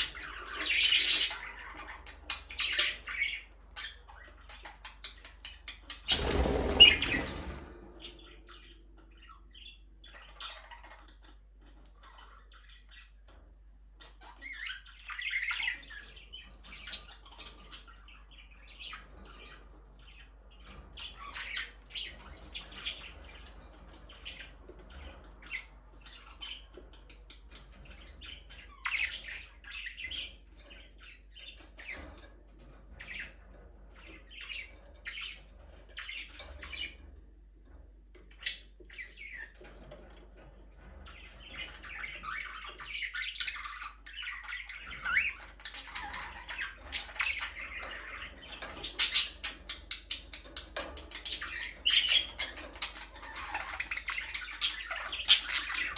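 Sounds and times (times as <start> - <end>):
budgerigars chirping: 0.0 - 7.5, 41.1 - 55.9.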